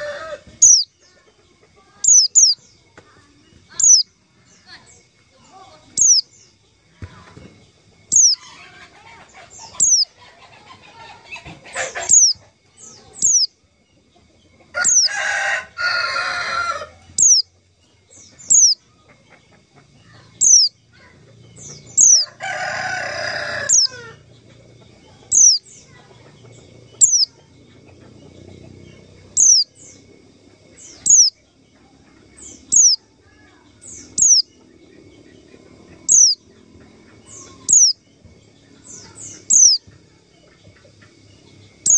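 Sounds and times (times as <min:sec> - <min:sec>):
harsh longer bird call: 0:00.0 - 0:00.9, 0:03.8 - 0:04.0, 0:06.0 - 0:06.2, 0:08.1 - 0:08.4, 0:09.8 - 0:10.1, 0:11.8 - 0:12.4, 0:14.8 - 0:15.2, 0:15.9 - 0:17.4, 0:20.4 - 0:20.7, 0:22.0 - 0:24.1, 0:25.3 - 0:25.6, 0:27.0 - 0:27.3, 0:29.4 - 0:29.7, 0:31.0 - 0:31.3, 0:32.7 - 0:33.0, 0:34.2 - 0:34.4, 0:36.1 - 0:36.4, 0:37.6 - 0:38.0
high whistled bird calls: 0:00.6 - 0:01.0, 0:02.0 - 0:02.7, 0:03.7 - 0:04.1, 0:05.9 - 0:06.5, 0:08.1 - 0:08.5, 0:09.4 - 0:10.2, 0:11.7 - 0:13.6, 0:14.8 - 0:15.2, 0:17.2 - 0:17.5, 0:18.2 - 0:18.8, 0:20.4 - 0:20.8, 0:21.6 - 0:22.4, 0:23.4 - 0:24.0, 0:25.3 - 0:25.8, 0:26.9 - 0:27.3, 0:29.3 - 0:30.0, 0:30.8 - 0:31.4, 0:32.4 - 0:33.0, 0:33.8 - 0:34.5, 0:36.1 - 0:36.4, 0:37.3 - 0:38.0, 0:38.9 - 0:39.8.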